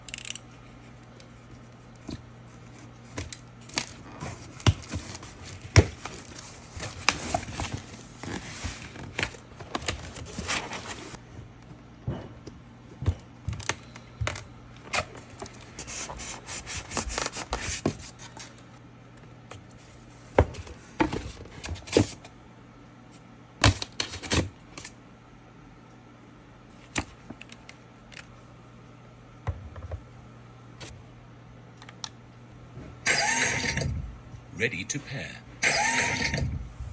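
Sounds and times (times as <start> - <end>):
packaging rubbing and scraping: 3.7 - 11.2.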